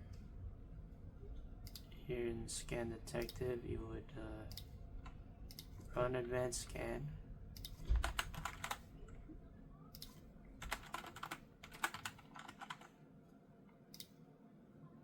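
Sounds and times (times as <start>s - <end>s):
typing on computer keyboard: 7.9s - 8.8s, 10.0s - 12.9s.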